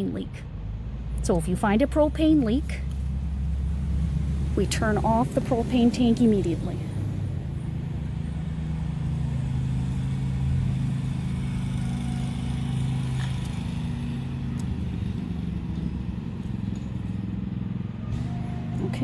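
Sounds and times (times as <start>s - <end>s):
engine humming: 0.0s - 19.0s.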